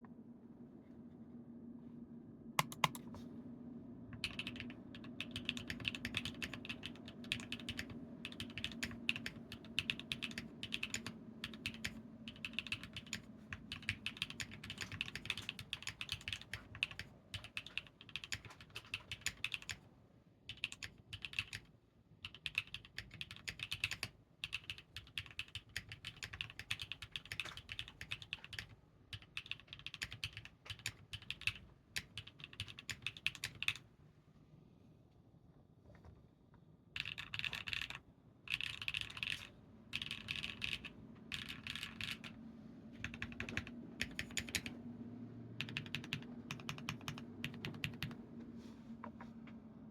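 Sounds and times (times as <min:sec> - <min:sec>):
low steady hum: 0:00.0 - 0:49.9
mechanical keyboard typing: 0:02.6 - 0:03.1, 0:04.2 - 0:19.8, 0:20.5 - 0:33.8, 0:37.0 - 0:42.3, 0:43.0 - 0:44.8, 0:45.6 - 0:48.2.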